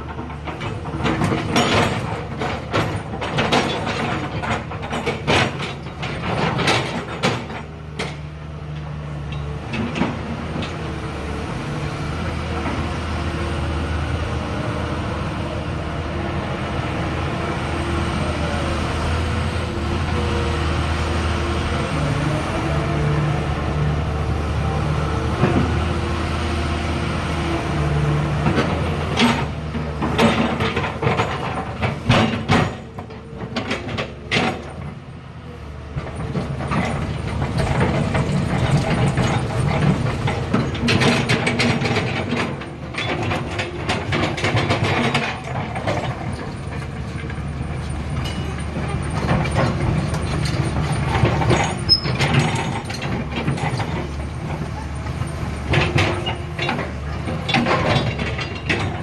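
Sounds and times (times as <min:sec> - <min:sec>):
excavator diesel engine droning: 0:00.0 - 0:59.0.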